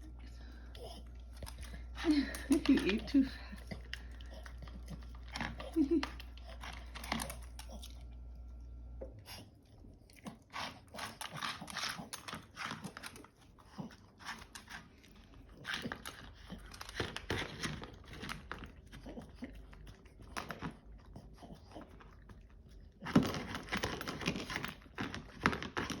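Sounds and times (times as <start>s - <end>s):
low hum: 0.0s - 9.4s
dog crunching a hard treat: 0.8s - 8.2s, 9.2s - 26.0s.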